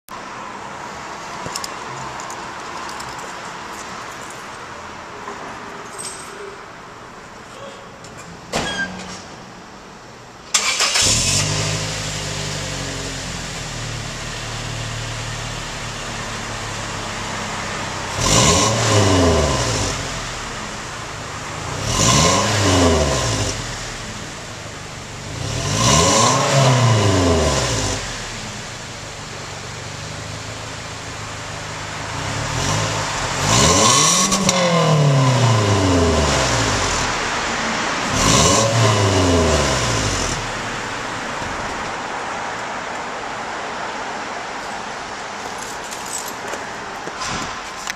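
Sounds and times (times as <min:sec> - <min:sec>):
car engine starting and idling: 0:10.0 - 0:44.6
car engine revving: 0:10.6 - 0:42.1.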